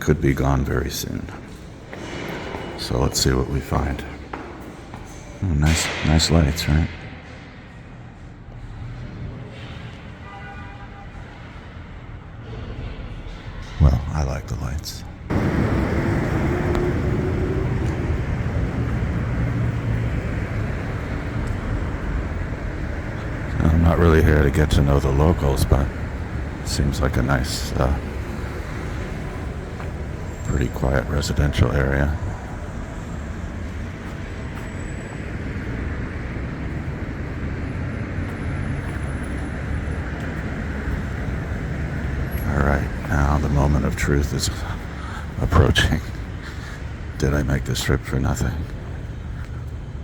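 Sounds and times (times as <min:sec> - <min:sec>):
street traffic: 0:00.0 - 0:50.0
vehicle engine rumble: 0:11.5 - 0:50.0.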